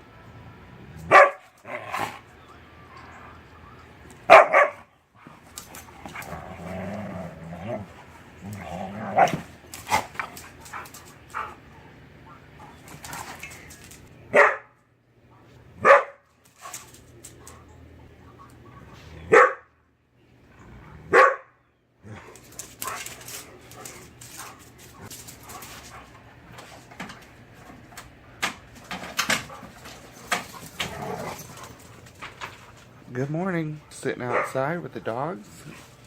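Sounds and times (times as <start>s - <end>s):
dog barking: 1.1s - 1.5s, 4.3s - 4.9s, 14.3s - 14.8s, 15.8s - 16.2s, 19.3s - 19.7s, 21.1s - 21.5s, 34.3s - 34.6s.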